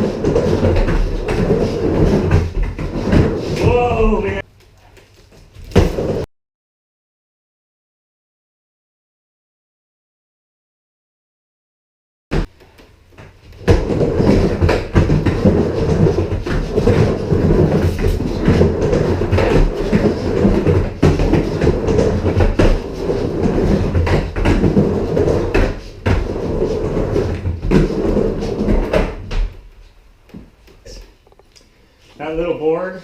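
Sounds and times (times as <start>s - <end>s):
skateboard wheels rolling on wood: 0.0s - 4.4s, 5.0s - 6.3s, 12.3s - 31.5s.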